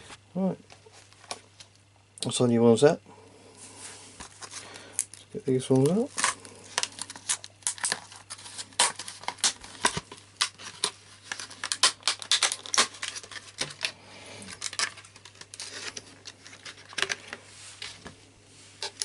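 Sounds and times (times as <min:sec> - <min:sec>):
packaging rustle: 0:04.2 - 0:18.1
plastic packaging crackling: 0:04.2 - 0:18.1.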